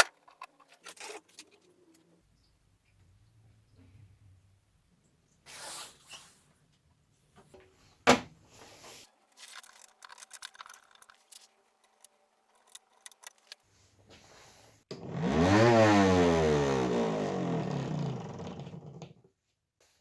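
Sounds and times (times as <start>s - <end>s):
handling clicks and rattles: 9.4s - 13.6s
table saw motor whine: 14.9s - 19.1s.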